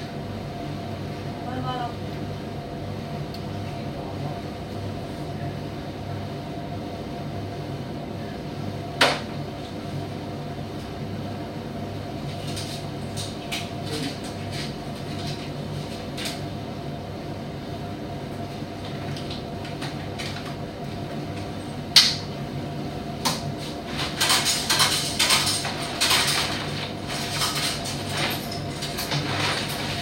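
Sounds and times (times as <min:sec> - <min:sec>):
dryer knocking and clattering: 0:23.3 - 0:30.0.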